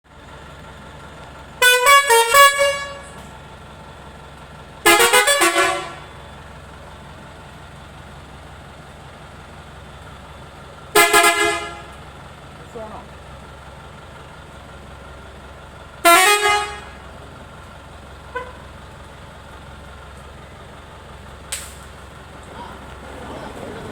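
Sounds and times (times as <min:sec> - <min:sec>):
engine idling: 0:00.0 - 0:23.9
musical air horn: 0:01.6 - 0:03.3, 0:04.8 - 0:06.2, 0:11.0 - 0:12.0, 0:16.0 - 0:17.0, 0:18.3 - 0:18.6.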